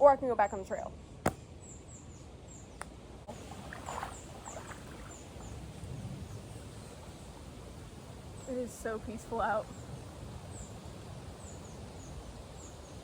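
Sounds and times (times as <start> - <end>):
small birds chirping: 0.3 - 13.0
river water running: 3.2 - 13.0.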